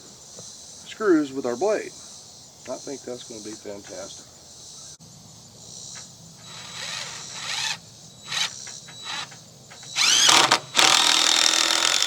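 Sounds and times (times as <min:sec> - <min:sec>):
impact driver driving screws: 0:06.5 - 0:12.0.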